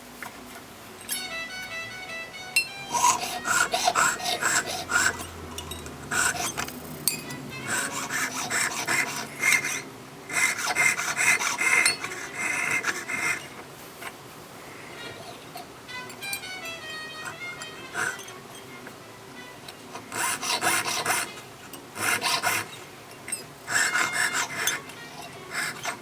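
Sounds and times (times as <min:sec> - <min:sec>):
background music: 0:00.4 - 0:09.4, 0:14.8 - 0:22.8
hand tool rasping metal: 0:02.9 - 0:13.6, 0:16.3 - 0:18.7, 0:19.7 - 0:26.0.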